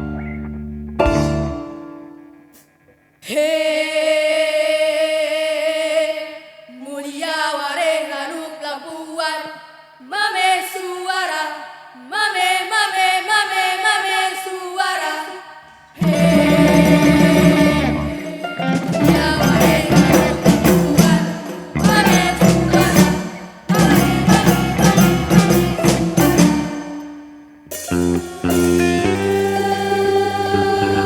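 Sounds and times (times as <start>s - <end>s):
ensemble with heavy drums: 16.0s - 26.8s.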